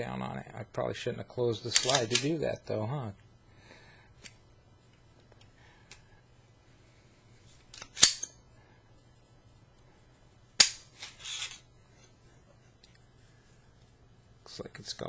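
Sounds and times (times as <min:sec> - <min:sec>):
pistol slide clacking: 0:07.8 - 0:08.3.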